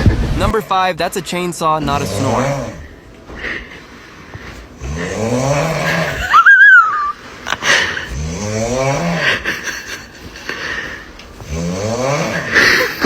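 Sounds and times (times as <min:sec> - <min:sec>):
person snoring: 0:01.8 - 0:03.0, 0:04.8 - 0:06.4, 0:07.6 - 0:09.6, 0:10.8 - 0:13.0
high whistle: 0:06.3 - 0:07.2.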